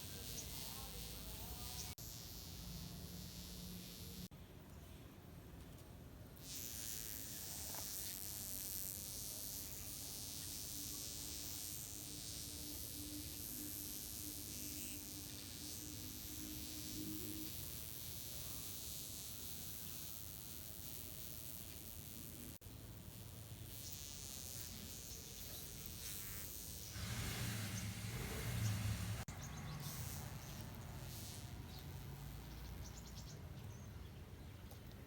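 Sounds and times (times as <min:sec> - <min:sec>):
wasp buzzing: 0:00.0 - 0:04.3, 0:06.4 - 0:33.1.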